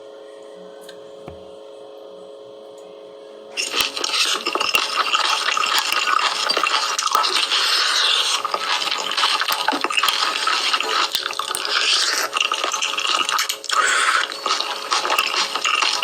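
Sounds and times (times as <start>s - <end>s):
wet chewing and smacking: 3.6s - 16.0s.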